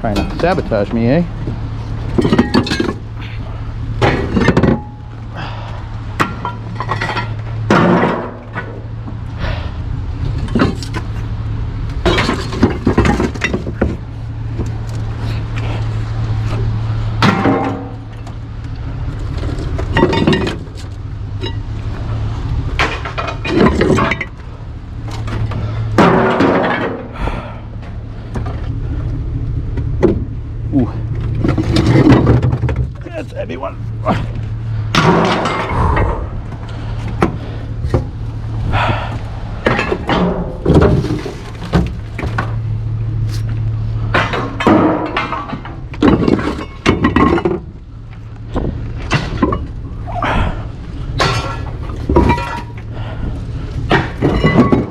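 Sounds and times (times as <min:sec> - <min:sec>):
steady low hum: 0:00.0 - 0:54.9
scrap metal clanking onto pile: 0:02.1 - 0:03.0, 0:04.0 - 0:05.0, 0:06.2 - 0:08.8, 0:12.0 - 0:14.0, 0:17.2 - 0:18.2, 0:19.2 - 0:21.6, 0:22.8 - 0:24.4, 0:25.2 - 0:27.2, 0:34.9 - 0:35.8, 0:39.6 - 0:42.4, 0:44.1 - 0:47.7, 0:51.2 - 0:52.9, 0:53.9 - 0:54.9
scrap metal thudding: 0:16.5 - 0:18.3, 0:25.1 - 0:27.2, 0:34.1 - 0:42.6, 0:50.4 - 0:53.2, 0:53.8 - 0:54.9.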